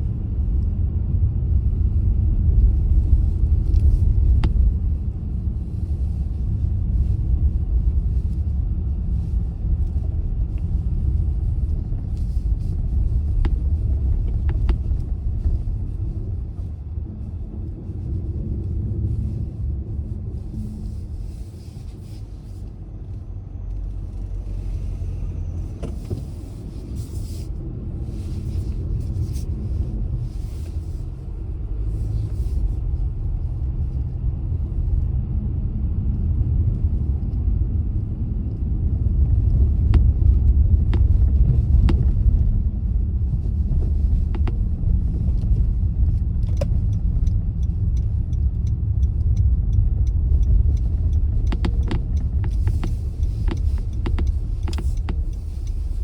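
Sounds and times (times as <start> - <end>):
car engine and tyres rumbling: 0.0 - 56.0
light ticks: 43.8 - 56.0.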